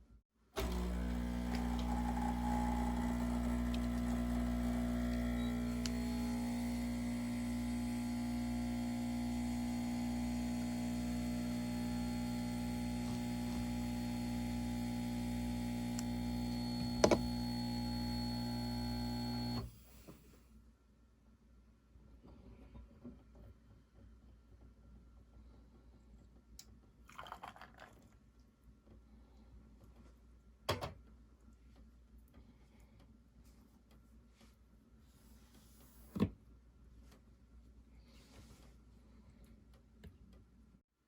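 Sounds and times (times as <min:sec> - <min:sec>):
kitchen appliance humming: 0:00.6 - 0:19.9.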